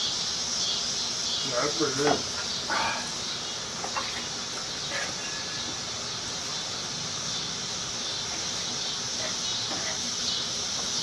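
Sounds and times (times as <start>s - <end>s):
insects droning: 0.0s - 11.0s.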